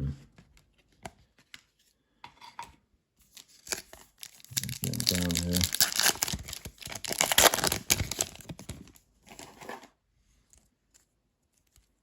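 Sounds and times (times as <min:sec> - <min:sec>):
wrapper tearing and crinkling: 0:03.4 - 0:09.8.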